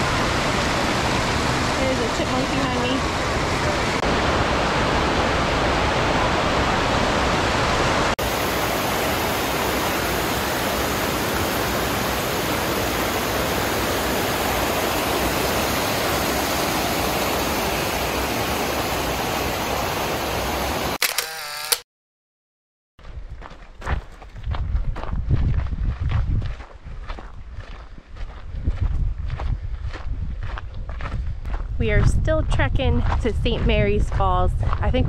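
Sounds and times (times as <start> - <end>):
waterfall roaring: 0.0 - 21.0.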